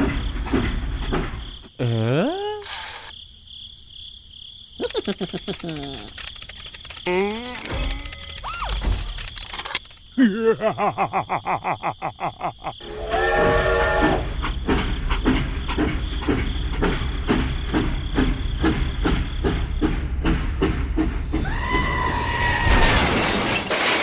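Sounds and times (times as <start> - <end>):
train whistle blast: 12.8 - 14.4
steam hissing: 12.8 - 20.2, 21.1 - 22.9
steam train chugging: 12.8 - 22.9.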